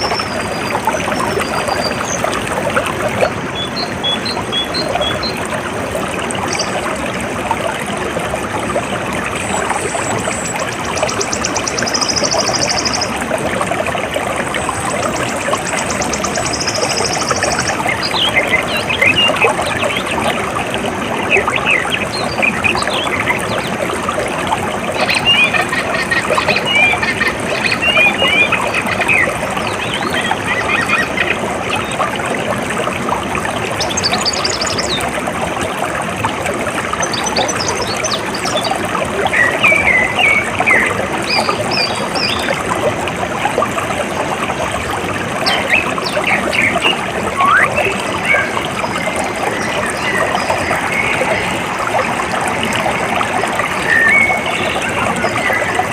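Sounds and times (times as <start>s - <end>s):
trickling water: 0.0s - 55.9s
birds chirping: 9.4s - 13.2s, 14.7s - 20.2s, 25.0s - 31.9s, 45.4s - 51.7s, 53.8s - 55.9s.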